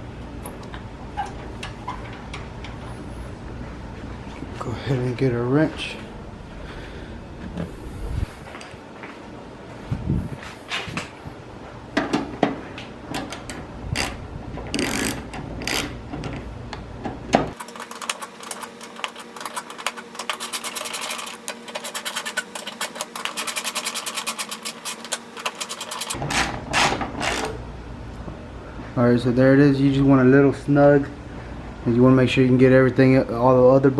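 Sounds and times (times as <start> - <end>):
ratchet wrench clicking: 14.0 - 16.0.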